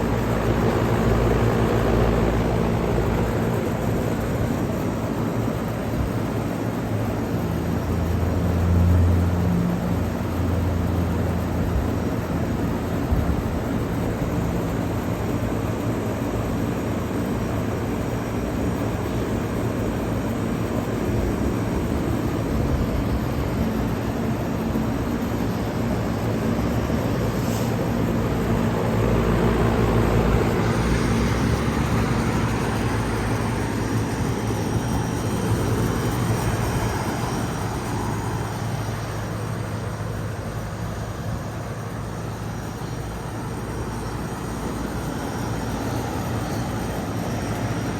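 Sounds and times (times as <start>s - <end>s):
air conditioner fan rush: 0.0s - 47.9s.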